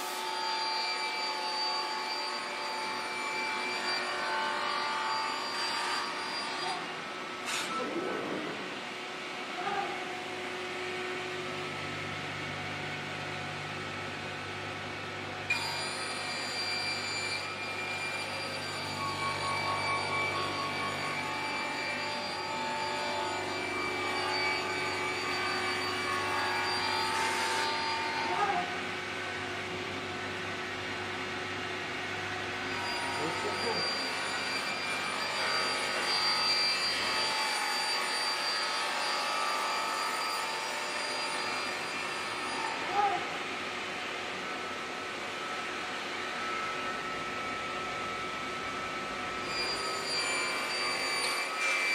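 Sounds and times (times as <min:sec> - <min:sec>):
high saw whine: 0:00.0 - 0:51.9
saw machine humming: 0:08.6 - 0:51.9
circular saw blade running: 0:32.3 - 0:43.1.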